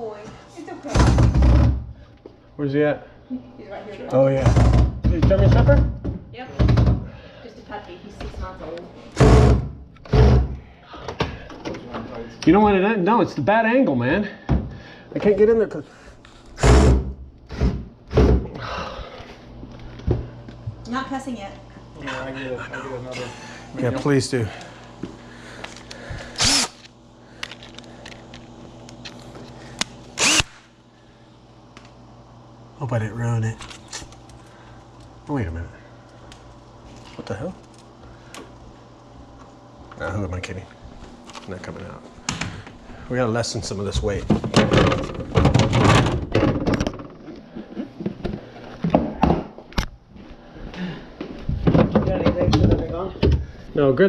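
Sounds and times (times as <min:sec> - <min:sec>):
steady low hum: 0:00.0 - 0:54.0
refrigerator parts clunking: 0:43.9 - 0:47.3, 0:51.5 - 0:53.5.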